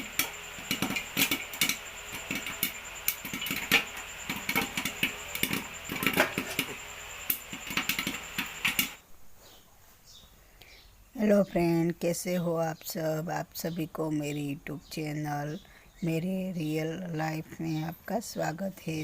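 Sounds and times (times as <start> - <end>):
cooker weight rattling: 0.0 - 9.0
pressure cooker steam hiss: 0.0 - 9.0.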